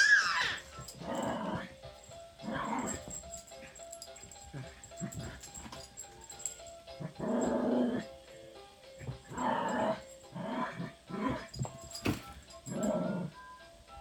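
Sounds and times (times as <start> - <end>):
dog growling: 0.0 - 1.8, 2.4 - 3.7, 4.5 - 5.6, 6.9 - 8.2, 9.0 - 11.6, 12.7 - 13.4
faint background music: 0.0 - 14.0.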